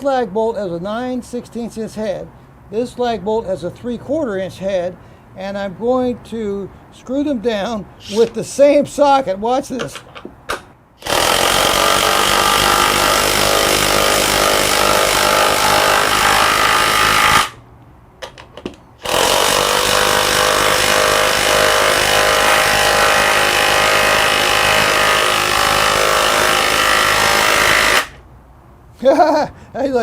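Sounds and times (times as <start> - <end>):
impact wrench hammering: 9.8 - 17.6, 18.2 - 28.2.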